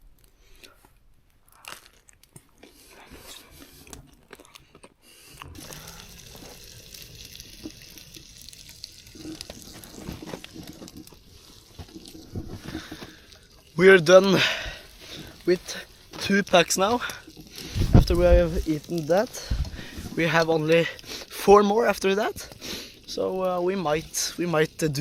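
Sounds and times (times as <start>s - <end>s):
bacon sizzling in a pan: 5.5s - 25.0s.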